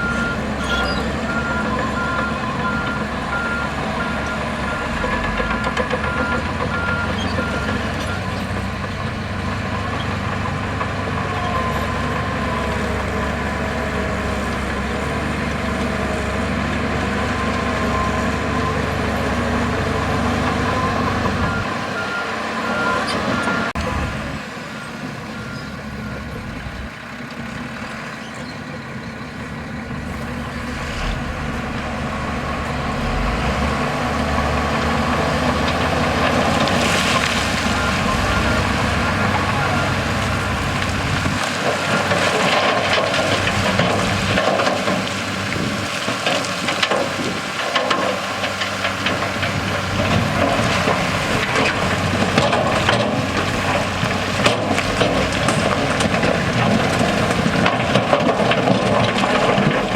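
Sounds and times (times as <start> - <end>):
reversing alarm beeping: 0.0 - 8.4, 20.6 - 23.8, 37.7 - 39.9
diesel machinery engines running: 0.0 - 59.9.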